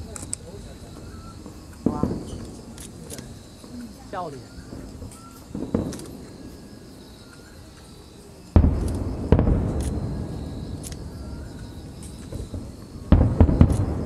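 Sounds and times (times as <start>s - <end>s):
crickets chirping: 0.0s - 14.0s
firework booms with echo: 1.0s - 2.7s, 4.6s - 6.6s, 8.5s - 14.0s.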